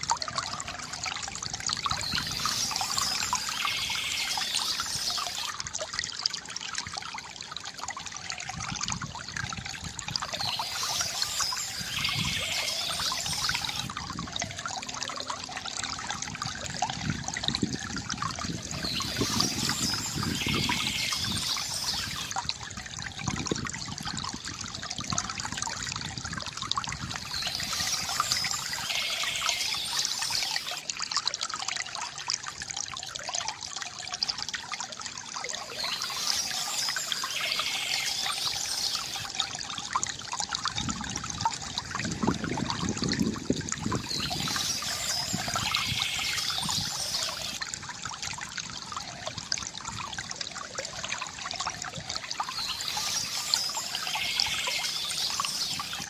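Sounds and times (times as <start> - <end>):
water trickling from a fountain: 0.0 - 56.0
birds chirping: 1.9 - 5.5, 10.3 - 13.9, 18.7 - 22.3, 27.2 - 30.8, 35.5 - 39.3, 44.0 - 47.6, 52.4 - 56.0.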